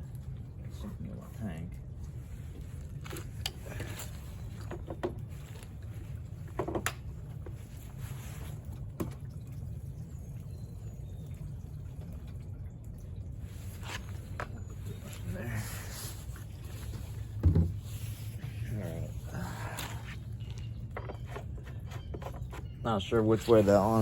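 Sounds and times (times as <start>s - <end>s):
gasoline sloshing and dripping: 0.0s - 24.0s.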